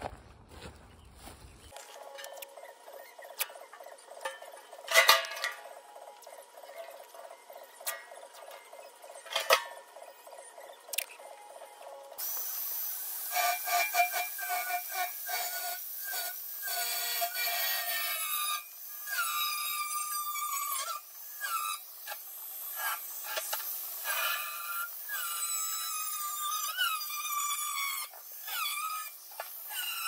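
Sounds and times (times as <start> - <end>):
tool scraping and rasping: 13.1 - 30.0.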